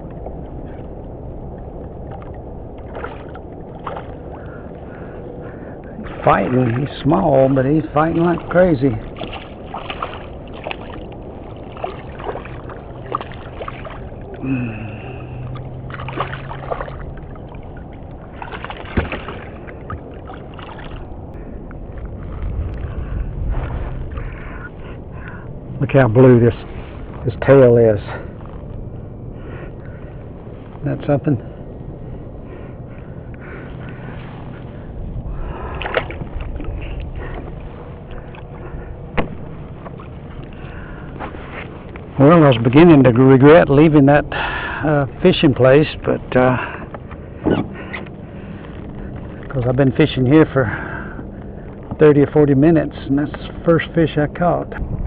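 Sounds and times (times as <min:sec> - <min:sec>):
water splashing: 0:00.0 - 0:28.7, 0:33.4 - 0:49.7
low steady hum: 0:00.0 - 0:55.0
wind rumble on microphone: 0:00.0 - 0:55.0
knocks against a kayak: 0:18.9 - 0:19.4.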